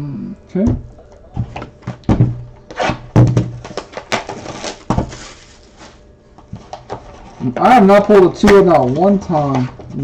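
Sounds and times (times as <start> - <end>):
packaging rustling: 2.6 - 7.3.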